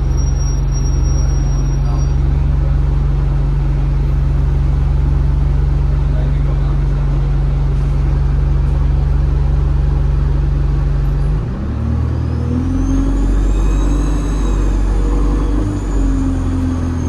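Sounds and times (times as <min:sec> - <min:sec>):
turbocharger whistle: 0:00.0 - 0:02.3, 0:12.2 - 0:17.0
bus diesel engine: 0:00.0 - 0:17.0.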